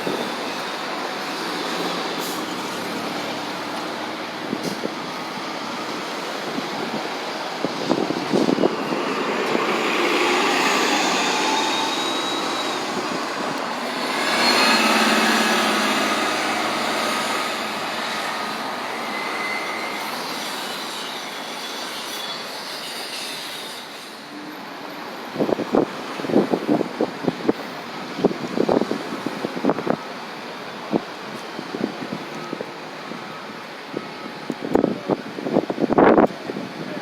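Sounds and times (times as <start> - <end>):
bus passing: 0.0 - 22.6, 24.1 - 37.0
brake squeals: 0.0 - 27.4.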